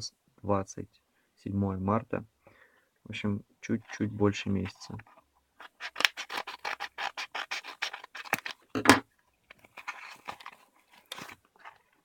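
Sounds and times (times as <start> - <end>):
packaging being torn: 5.6 - 8.6, 9.6 - 11.8
soft rustling: 9.4 - 12.0.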